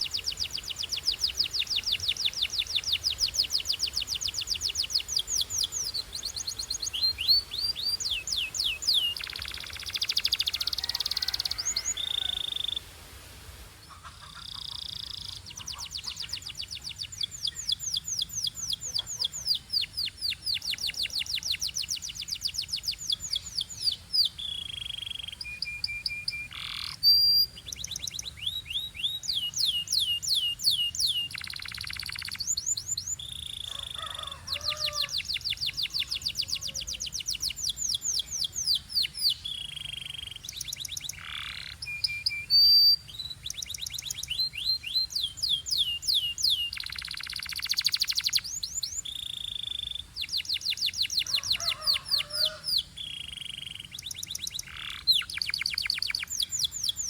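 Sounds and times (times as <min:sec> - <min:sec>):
loud canary calls: 0:00.0 - 0:12.9, 0:13.8 - 0:25.4, 0:26.0 - 0:57.0
canary trilling and whistling: 0:24.7 - 0:34.0, 0:34.6 - 0:57.0.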